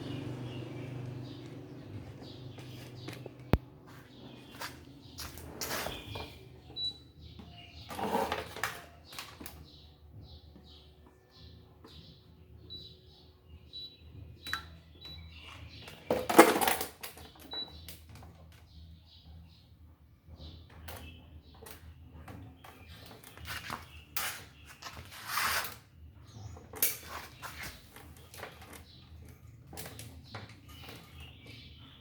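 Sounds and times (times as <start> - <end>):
fan parts and tools clattering: 0.1 - 9.6, 15.3 - 18.6, 20.4 - 32.0.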